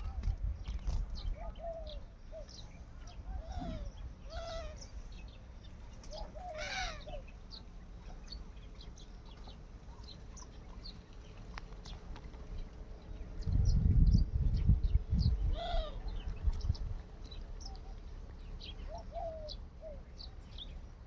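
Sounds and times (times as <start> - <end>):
bird arching calls: 6.1 - 7.3.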